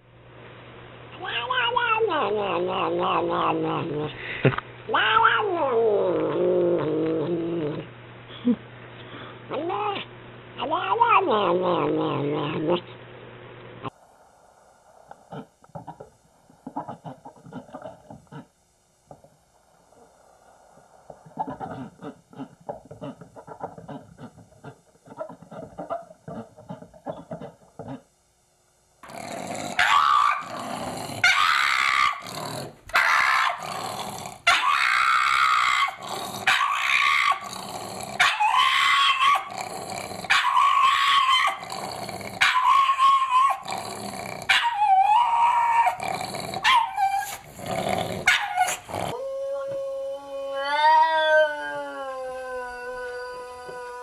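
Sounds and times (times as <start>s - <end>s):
dog howling: 29.1s - 43.8s, 44.5s - 47.5s, 48.2s - 54.0s.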